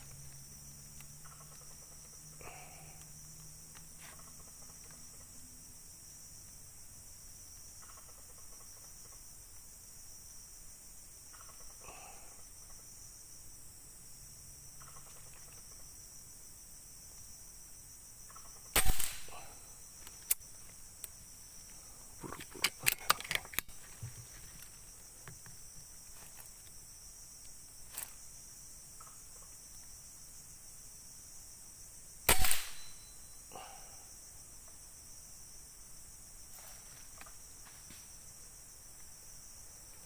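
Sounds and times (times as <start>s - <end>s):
insects droning: 0.0s - 40.0s
sharp clicks: 18.7s - 19.4s, 20.0s - 20.4s, 22.3s - 23.7s, 32.3s - 32.9s
air rifle shot: 18.7s - 19.6s, 32.3s - 33.2s.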